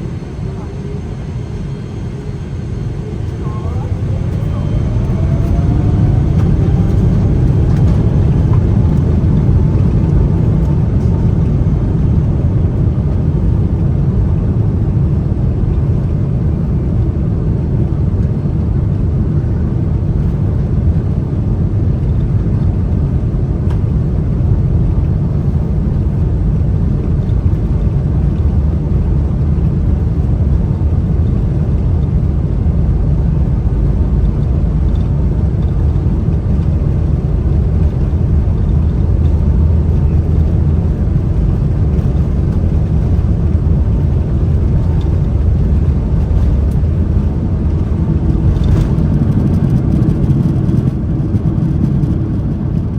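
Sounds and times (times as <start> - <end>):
faint rising whine: 0.0 - 12.2
airplane cabin engine rumble: 0.0 - 52.9.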